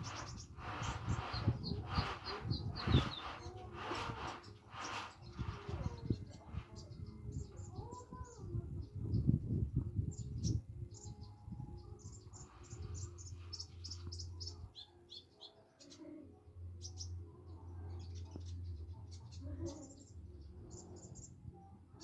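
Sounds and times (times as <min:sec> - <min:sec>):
bird chirping: 0:00.0 - 0:08.4, 0:10.2 - 0:16.1.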